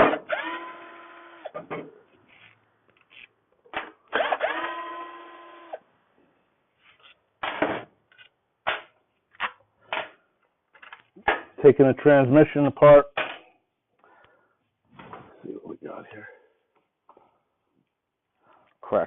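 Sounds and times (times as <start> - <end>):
power driver whining: 0.0 - 1.6, 3.8 - 5.8.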